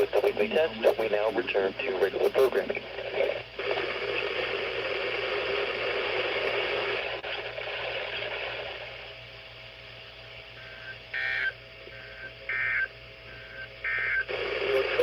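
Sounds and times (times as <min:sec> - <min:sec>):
weather radio broadcast: 0:00.0 - 0:08.5, 0:14.2 - 0:15.0
radio static hiss: 0:00.0 - 0:15.0
buzzy two-tone data burst: 0:10.4 - 0:15.0.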